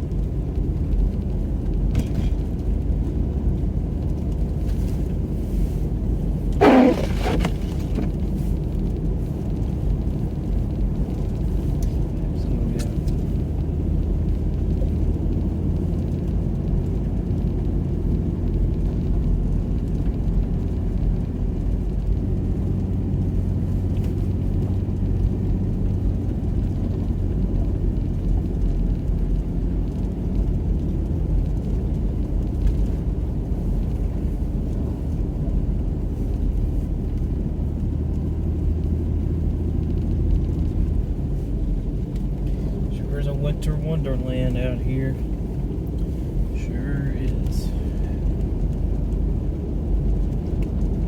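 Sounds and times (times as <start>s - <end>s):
car engine hum: 0.0s - 51.0s
tyre noise on snow: 6.6s - 8.1s.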